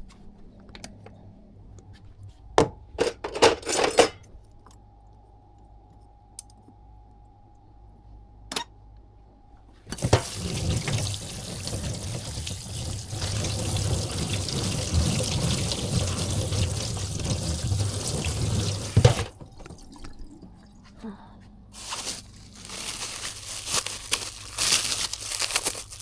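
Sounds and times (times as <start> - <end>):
tap water splashing into sink: 9.9 - 20.7.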